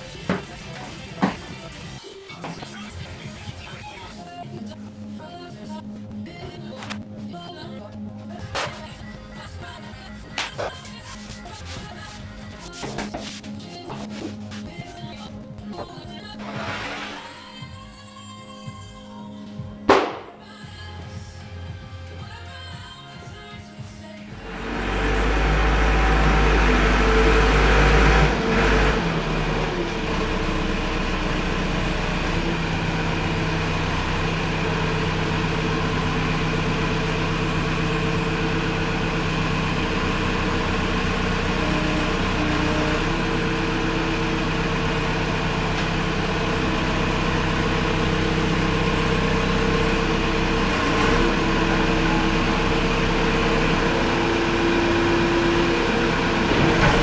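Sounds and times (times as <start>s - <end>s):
diesel engine running: 7.3s - 17.9s, 24.3s - 57.0s.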